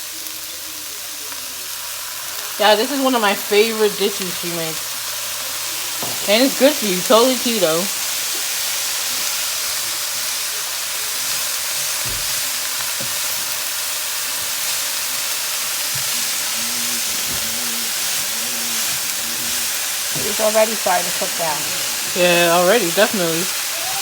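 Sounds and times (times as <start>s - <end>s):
vegetables sizzling in a frying pan: 0.0s - 24.0s
faint knocks: 6.0s - 7.2s.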